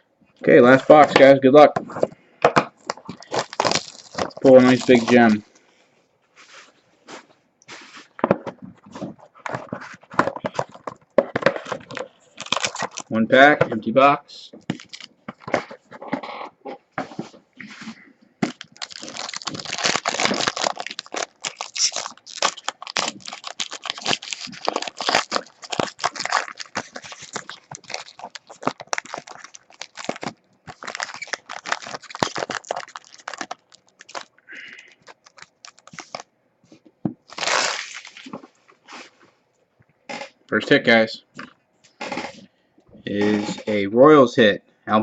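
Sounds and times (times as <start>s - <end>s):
cards being handled: 2.8s - 5.4s
plastic wrapper crinkling: 2.8s - 5.4s, 8.8s - 13.6s, 14.6s - 16.1s, 18.4s - 36.3s, 37.2s - 38.5s.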